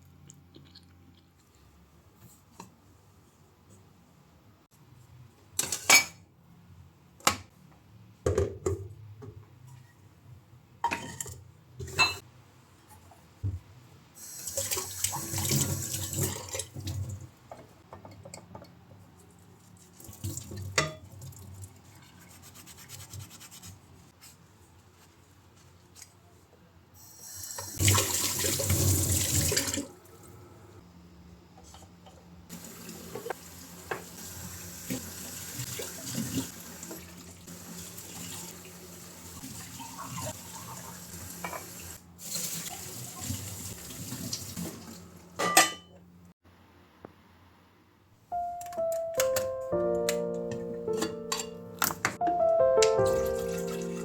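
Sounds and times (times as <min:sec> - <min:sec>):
tap running water: 0:27.5 - 0:29.9, 0:32.5 - 0:45.0
dishes knocking and clinking: 0:45.4 - 0:45.9, 0:50.9 - 0:52.2.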